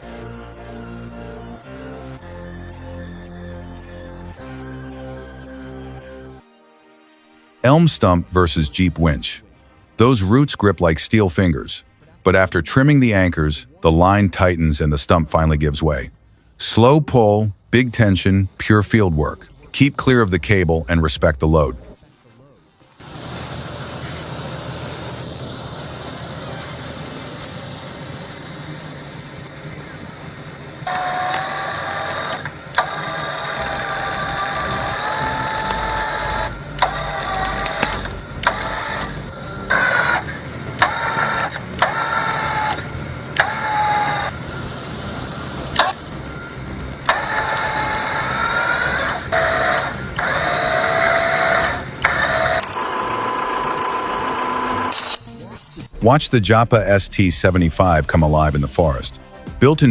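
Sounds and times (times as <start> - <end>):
electric winch whining: 0.0 - 6.4, 22.8 - 55.0
vehicle engine running: 23.0 - 54.9.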